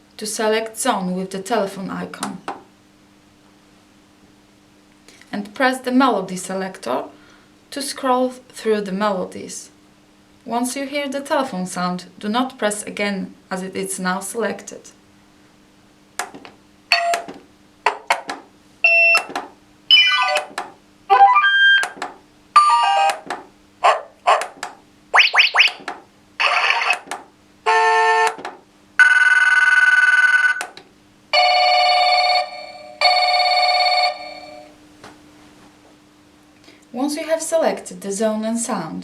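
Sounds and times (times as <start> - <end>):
doorbell electronic chimes and tunes: 16.9 - 17.3, 19.9 - 20.5, 22.6 - 23.1, 31.4 - 34.7
telephone-style ring: 29.0 - 30.6, 31.4 - 34.7.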